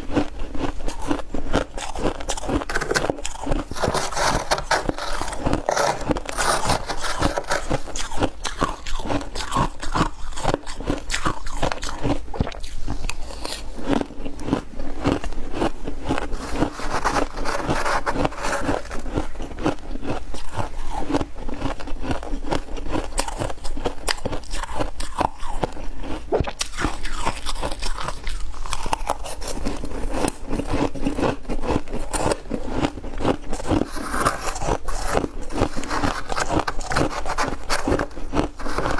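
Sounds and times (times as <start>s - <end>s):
ice being chewed: 0.0s - 38.9s
spoon scraping through ice: 0.9s - 11.9s, 16.2s - 19.8s, 33.4s - 38.9s.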